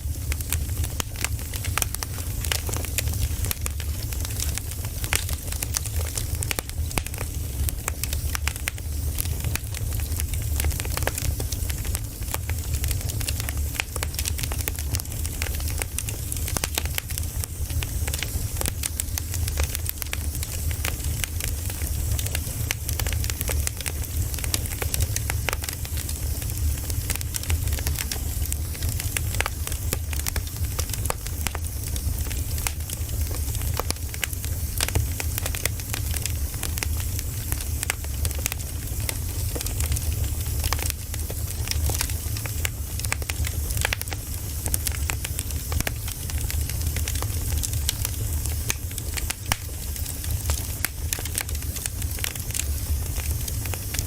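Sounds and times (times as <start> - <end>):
low rumble of flames: 0.0 - 54.0
burning wood popping and snapping: 0.1 - 54.0.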